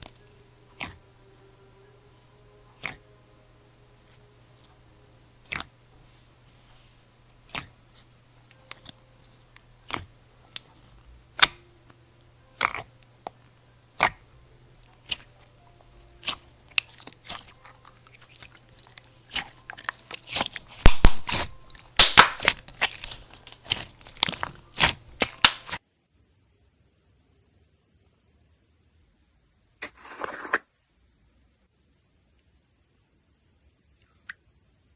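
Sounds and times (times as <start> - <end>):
slime popping and crackling: 12.6 - 12.9, 16.1 - 25.8.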